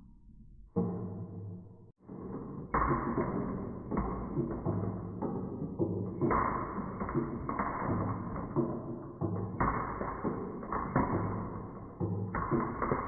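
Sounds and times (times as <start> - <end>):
loud marble clacks: 2.1 - 13.0
marbles clattering on wooden run: 2.7 - 13.0.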